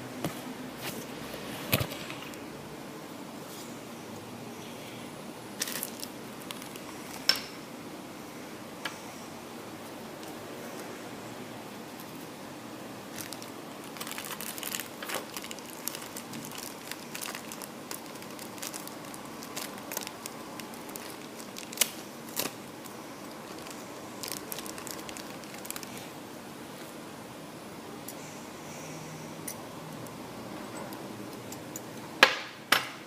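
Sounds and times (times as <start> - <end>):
plastic packaging crinkling: 5.6 - 7.2, 13.1 - 26.2.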